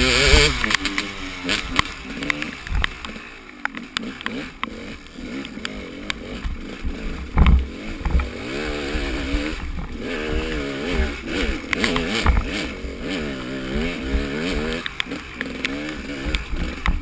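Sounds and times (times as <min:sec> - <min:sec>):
small motorcycle engine revving: 0:00.0 - 0:17.0
sharp ticks on microphone: 0:00.3 - 0:06.6, 0:07.2 - 0:08.3, 0:14.7 - 0:17.0.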